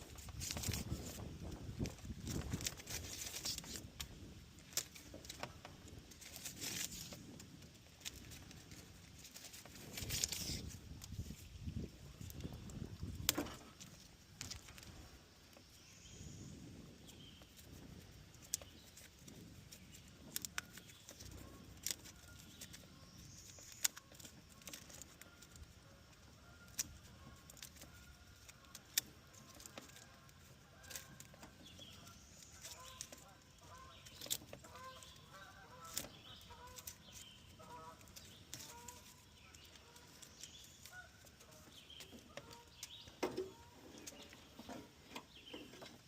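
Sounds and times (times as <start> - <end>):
wiring harness clicking and rattling: 0.0 - 11.4, 23.4 - 25.7.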